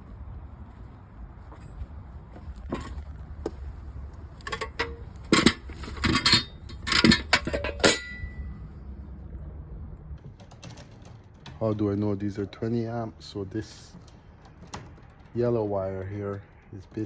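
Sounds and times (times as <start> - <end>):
steady low hum: 0.0 - 10.2
metallic clinks and clatters: 2.4 - 8.5.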